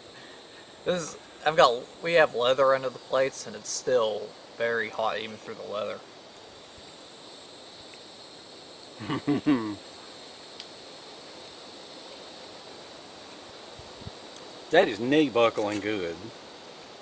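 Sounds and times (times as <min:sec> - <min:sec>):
outdoor background hiss: 0:00.0 - 0:17.0
man's voice: 0:00.9 - 0:06.0.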